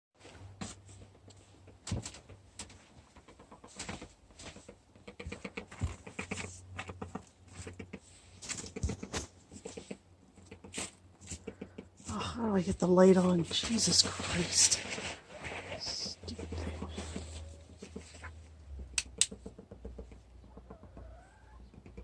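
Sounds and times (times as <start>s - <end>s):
knocks and rustles: 0.2s - 12.1s.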